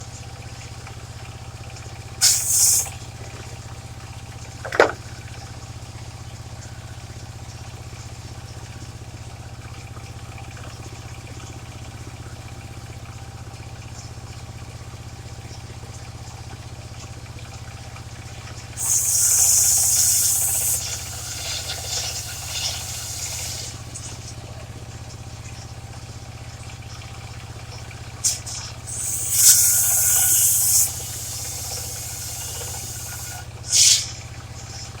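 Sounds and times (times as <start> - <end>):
sawmill engine running: 2.2 - 3.1, 18.8 - 24.5, 27.6 - 34.2.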